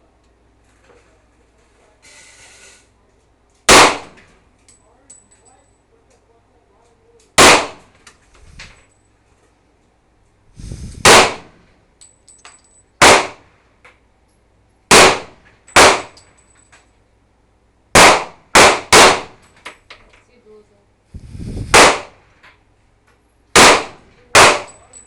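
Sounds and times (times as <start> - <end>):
gunshots: 3.7 - 4.2, 7.4 - 7.9, 11.0 - 11.6, 13.0 - 13.4, 14.9 - 16.2, 18.0 - 19.4, 21.7 - 22.2, 23.6 - 24.8.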